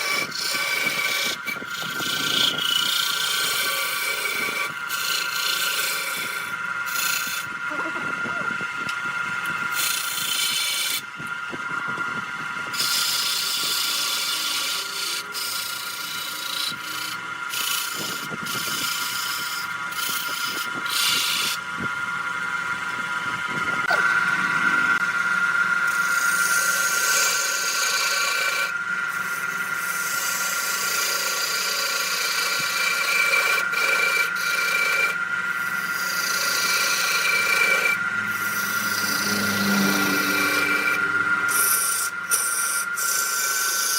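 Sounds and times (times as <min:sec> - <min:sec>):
tool scraping spinning wood: 0:00.0 - 0:43.9
wood lathe motor whine: 0:00.0 - 0:43.9.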